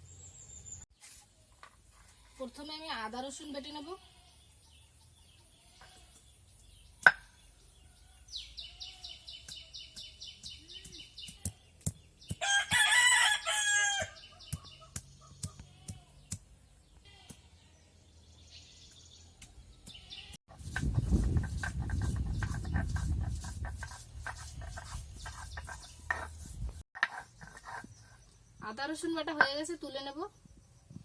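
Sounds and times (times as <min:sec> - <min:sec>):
bird chirps: 0:04.3 - 0:12.4, 0:13.9 - 0:20.4
rooster crowing: 0:12.4 - 0:14.3.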